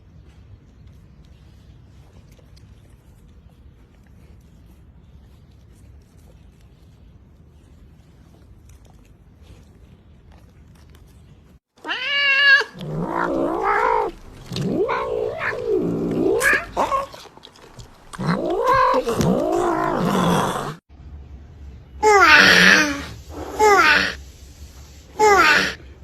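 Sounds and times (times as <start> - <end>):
cat yowling: 11.8 - 17.3, 18.2 - 20.8, 22.0 - 24.2, 25.2 - 25.8.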